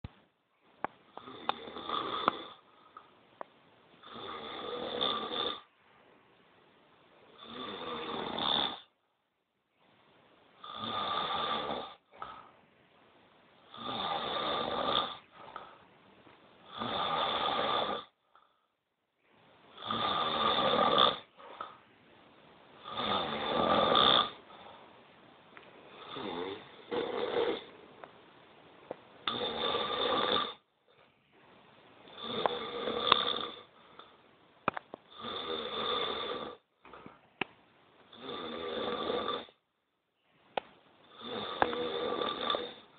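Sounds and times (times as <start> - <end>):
man snoring loudly: 1.2 - 2.6, 4.0 - 5.6, 7.4 - 8.9, 10.6 - 12.0, 13.7 - 15.2, 16.7 - 18.2, 19.8 - 21.3, 22.8 - 24.4, 25.9 - 27.7, 29.3 - 30.6, 32.1 - 33.7, 35.1 - 36.6, 38.1 - 39.6, 41.1 - 42.9.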